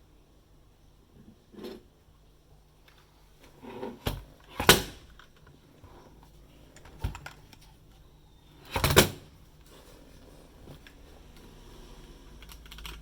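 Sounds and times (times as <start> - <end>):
keyboard key clicks: 12.4 - 13.0.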